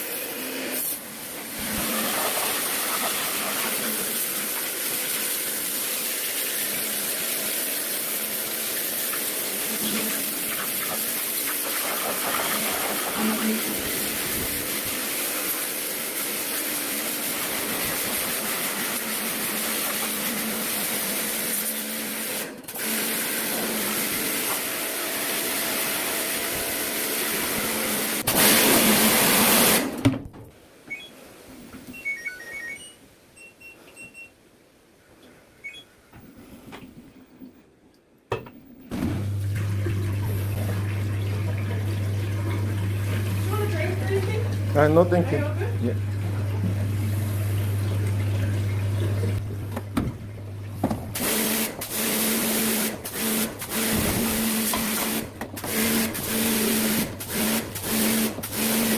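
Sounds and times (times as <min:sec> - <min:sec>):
water spraying hard: 0:00.0 - 0:24.5, 0:42.8 - 0:46.1, 0:51.1 - 0:58.9
faint short beeps: 0:31.9 - 0:34.4, 0:35.6 - 0:35.9.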